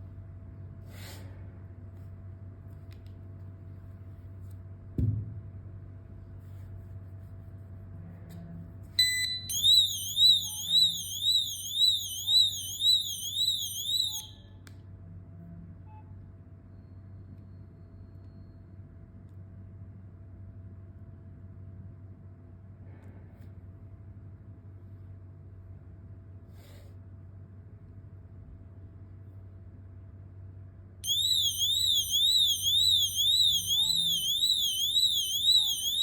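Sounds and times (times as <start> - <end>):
single thump: 5.0 - 5.4
short high beep: 9.0 - 14.4, 31.0 - 36.0
high-pitched warbling alarm siren: 9.0 - 14.5, 31.0 - 36.0.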